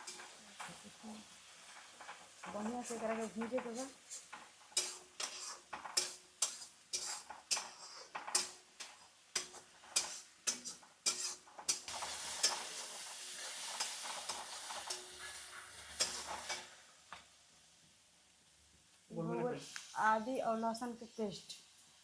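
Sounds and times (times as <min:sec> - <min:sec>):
spoon scraping metal pan: 0:00.0 - 0:00.8, 0:01.6 - 0:16.8
paste sizzling in oil: 0:00.0 - 0:18.4, 0:19.5 - 0:22.0.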